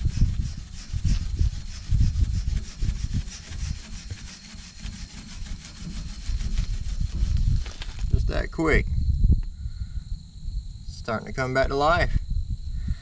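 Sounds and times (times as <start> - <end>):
steel wool rubbing on metal: 0.0 - 8.0
low thumping rumble: 0.0 - 11.0.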